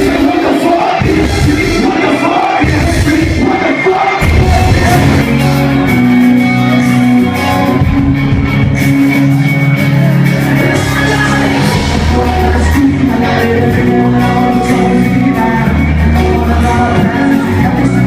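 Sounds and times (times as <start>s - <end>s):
live concert music with vocalist: 0.0s - 18.0s
heavy sustained bass: 4.2s - 18.0s.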